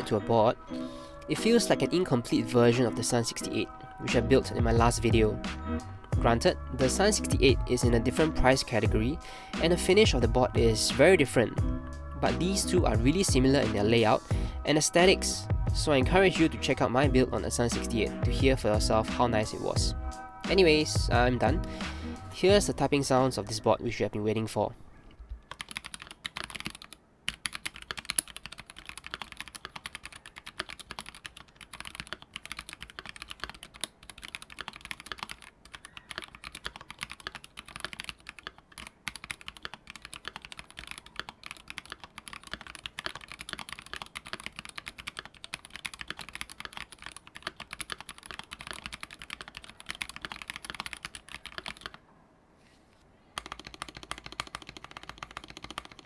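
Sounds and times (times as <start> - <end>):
fast mechanical keyboard typing: 25.5 - 52.0, 53.4 - 56.0.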